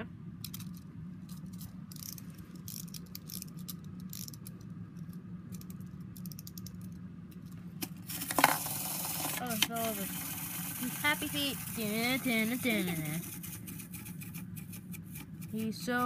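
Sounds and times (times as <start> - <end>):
ratcheting clicks and rattles: 0.4 - 16.0
wind-up toy gears whirring: 1.4 - 4.5, 8.1 - 16.0.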